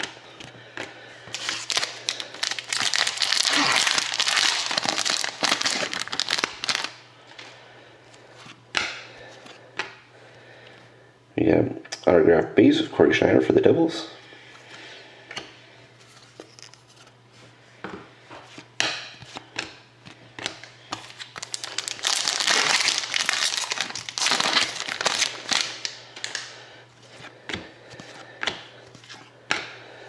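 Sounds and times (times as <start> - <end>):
cards shuffled and handled: 1.3 - 6.9, 18.5 - 26.5
card pack wrapper crinkling: 1.3 - 7.0, 21.0 - 26.5.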